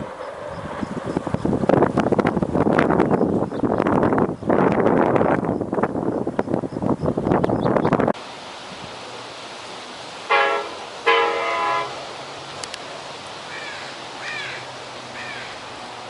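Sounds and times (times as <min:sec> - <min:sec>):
rain hissing: 0:00.0 - 0:16.0
locomotive air horn: 0:10.2 - 0:12.2.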